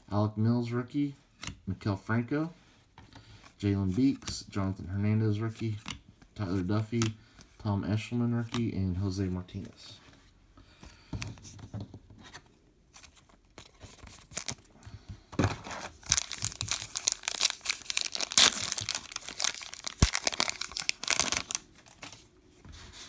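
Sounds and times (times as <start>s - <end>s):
card pack wrapper tearing: 13.6s - 14.7s, 15.6s - 22.2s.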